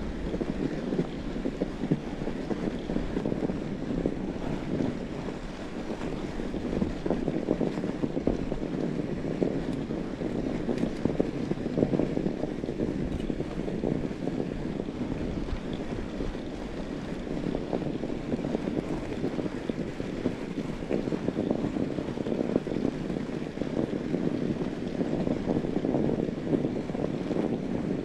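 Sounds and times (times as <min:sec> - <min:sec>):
bike tyres rolling over snow: 0:00.0 - 0:28.0
wind buffeting microphone: 0:00.0 - 0:28.0.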